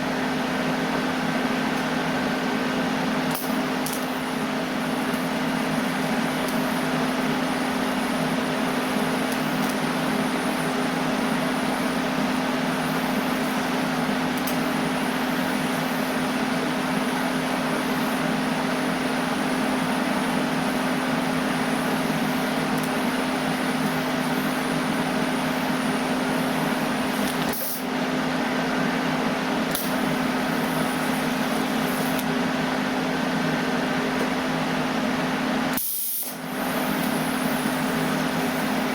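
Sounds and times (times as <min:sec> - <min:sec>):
machine hum with hiss: 0:00.0 - 0:38.9.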